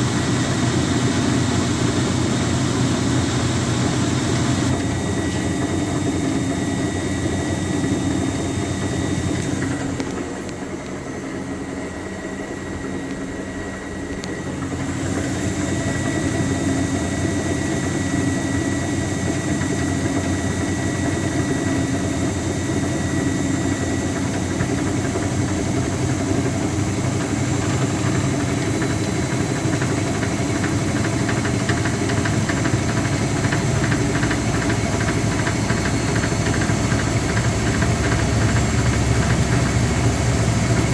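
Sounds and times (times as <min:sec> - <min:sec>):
washing machine knocking clunk: 0:14.5 - 0:40.9.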